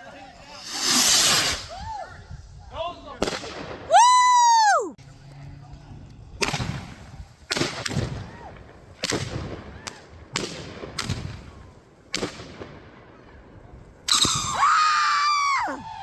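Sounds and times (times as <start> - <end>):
fireworks exploding: 0.4 - 1.7, 6.4 - 13.4.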